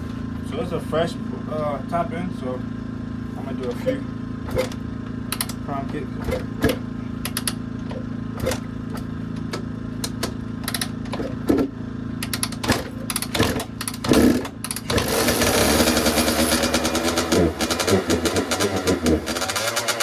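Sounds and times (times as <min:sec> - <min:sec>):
two-stroke engine running: 0:00.0 - 0:20.0
engine kick-start knocks: 0:03.6 - 0:20.0.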